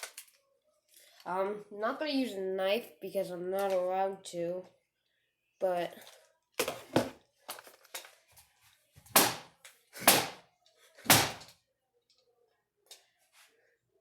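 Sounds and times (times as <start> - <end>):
plastic toy being banged: 9.1 - 10.4, 11.0 - 11.5.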